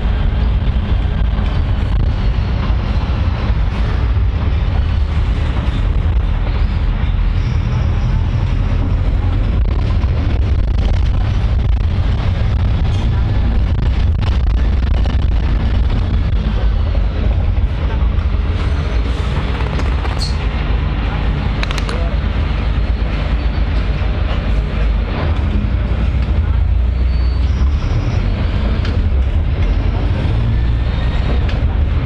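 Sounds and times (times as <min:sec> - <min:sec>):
vehicle low rumble: 0:00.0 - 0:32.0
passenger voices: 0:07.9 - 0:27.6
sharp clicks or rattles: 0:19.4 - 0:20.5, 0:21.6 - 0:22.1.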